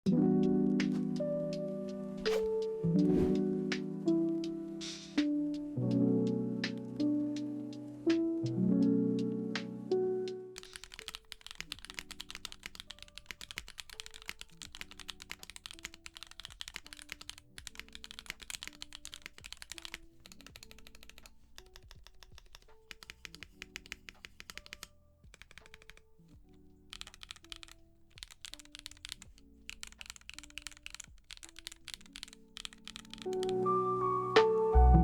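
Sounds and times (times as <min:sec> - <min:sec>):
soft background music: 0:00.1 - 0:35.0
mechanical keyboard typing: 0:10.6 - 0:33.6.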